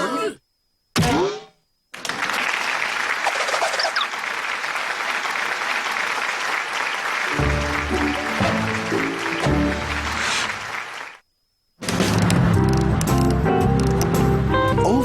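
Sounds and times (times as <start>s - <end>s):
crowd applauding: 2.0s - 11.2s
short musical cue: 7.3s - 10.6s.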